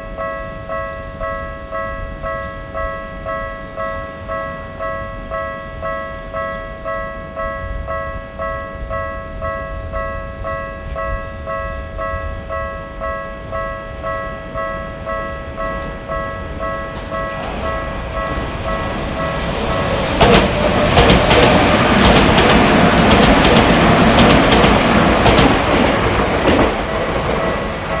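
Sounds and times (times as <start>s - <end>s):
level-crossing warning bell: 0.0s - 28.0s
electric train passing: 2.3s - 28.0s
train wheels clacking on rails: 15.6s - 28.0s.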